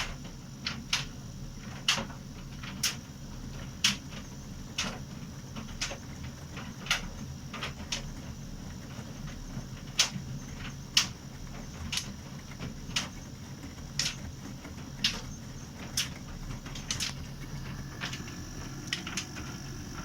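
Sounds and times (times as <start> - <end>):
washing machine humming: 0.0 - 20.0
sharp clicks: 16.0 - 19.6.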